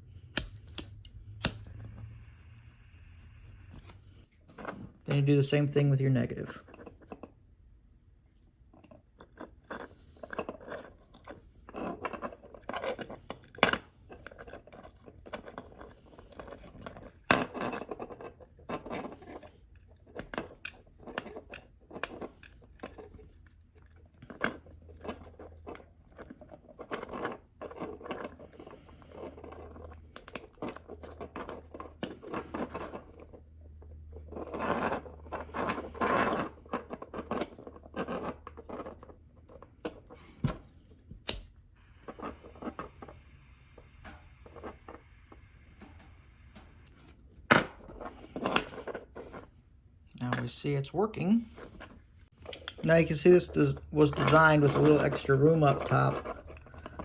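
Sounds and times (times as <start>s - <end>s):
sharp clicks: 0.3s - 2.8s
hands scraping and rustling wires: 8.7s - 57.0s.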